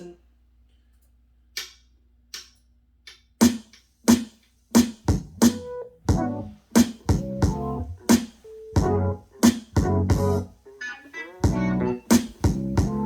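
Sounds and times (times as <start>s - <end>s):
drum machine beat: 3.4s - 10.4s, 11.4s - 13.0s
bass and synth chords: 5.1s - 8.1s, 8.8s - 9.2s, 9.8s - 10.5s, 11.5s - 13.0s.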